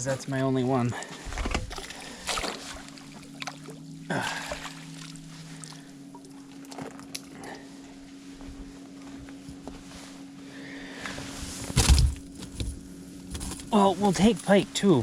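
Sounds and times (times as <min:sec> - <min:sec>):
low hum: 0:00.0 - 0:15.0
light splashes: 0:01.4 - 0:07.3.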